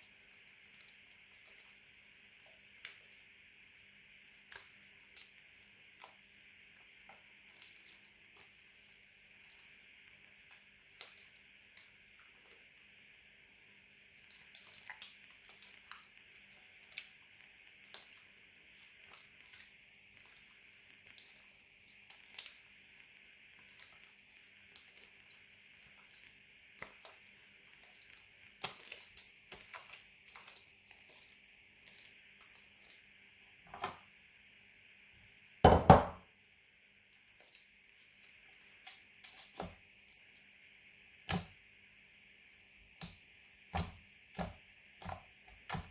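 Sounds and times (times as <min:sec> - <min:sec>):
faint steady hiss: 0:00.0 - 0:45.9.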